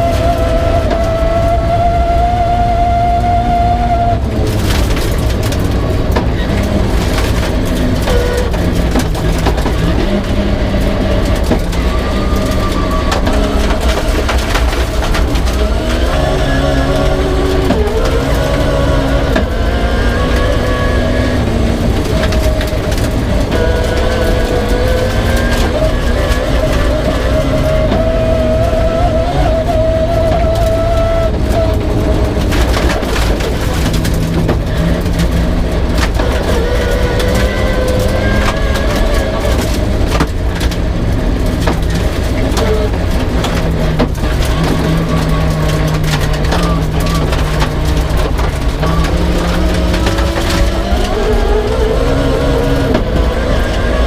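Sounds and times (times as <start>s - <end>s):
rally car engine through gear changes: 0.0s - 54.0s.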